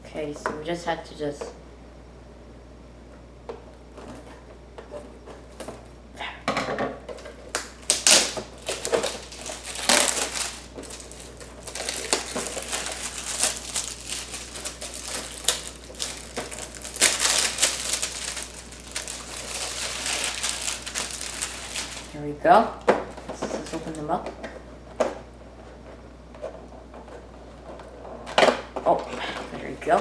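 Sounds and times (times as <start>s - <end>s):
packaging crinkling and scraping: 7.1s - 22.2s.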